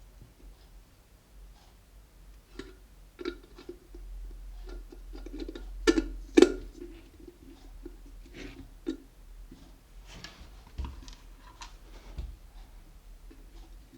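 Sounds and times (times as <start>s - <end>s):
kettle parts clicking and rattling: 2.5s - 4.0s, 4.6s - 9.0s, 10.8s - 11.8s.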